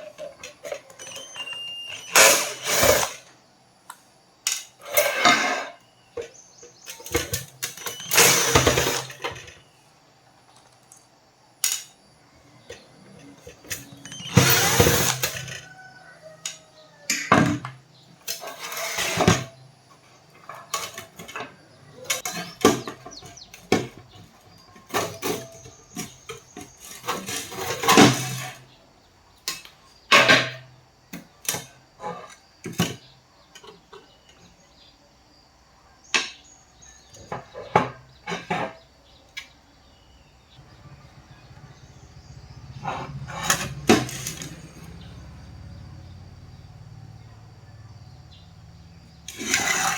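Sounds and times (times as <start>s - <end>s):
metal scraping: 0.0s - 3.3s, 4.8s - 5.8s, 12.6s - 15.7s, 18.3s - 19.6s, 40.6s - 45.9s, 49.3s - 49.9s
tools and metal parts clattering: 0.0s - 3.3s, 4.5s - 9.7s, 10.5s - 28.8s, 29.4s - 34.6s, 37.0s - 39.0s, 41.7s - 47.1s, 49.2s - 49.9s.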